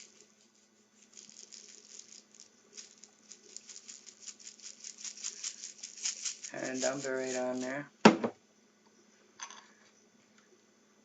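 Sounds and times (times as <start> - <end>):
sprinkles rattling in container: 0.0 - 7.8.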